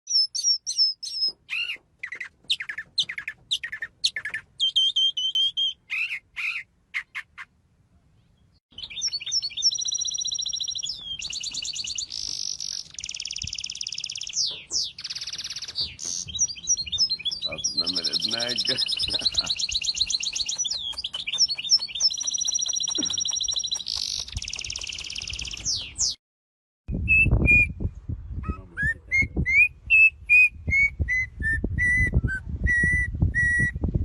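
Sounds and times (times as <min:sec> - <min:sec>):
small bird chirping and trilling: 0:00.1 - 0:07.5, 0:08.2 - 0:26.2.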